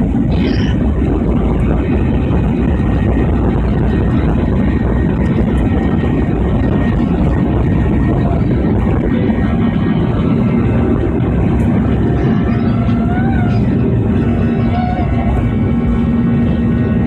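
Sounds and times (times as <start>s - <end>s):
airliner engines rumbling: 0.0s - 17.0s
rushing air: 0.0s - 17.0s.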